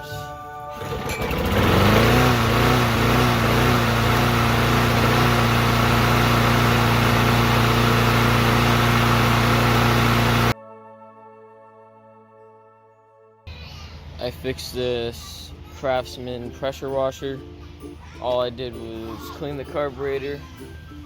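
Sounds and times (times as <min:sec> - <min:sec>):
motor running at high speed: 0:00.8 - 0:10.6.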